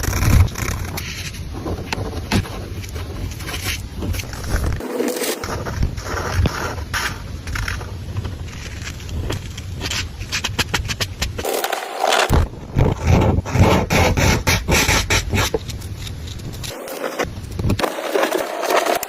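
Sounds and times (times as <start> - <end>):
pencil strokes scratching paper: 13.0 - 19.0.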